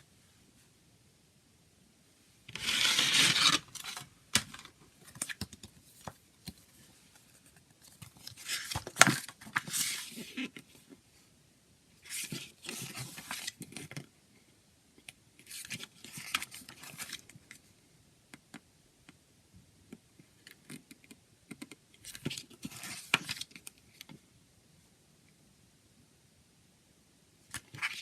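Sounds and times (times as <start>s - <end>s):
plastic and paper rustling: 2.5s - 10.6s.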